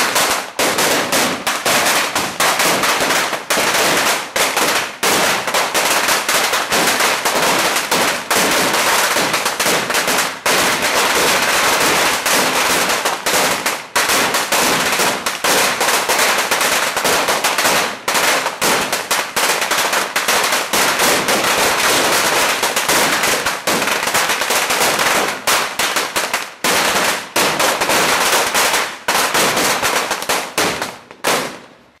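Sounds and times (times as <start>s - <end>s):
firecrackers crackling: 0.0s - 32.0s.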